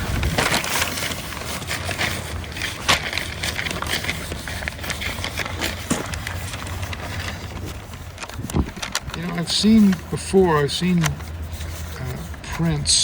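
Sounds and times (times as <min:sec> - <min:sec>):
wind buffeting microphone: 0:00.0 - 0:00.6, 0:07.4 - 0:09.2
paper crackling and rustling: 0:00.0 - 0:13.0.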